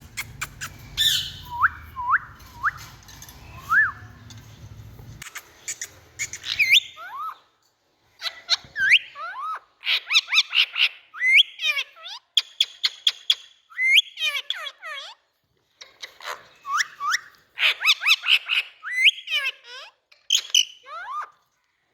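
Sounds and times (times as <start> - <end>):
parrot squawks: 0.0 - 2.8, 5.2 - 7.4
chattering clicks: 0.0 - 6.8
parrot whistling: 0.1 - 4.2, 5.3 - 7.4.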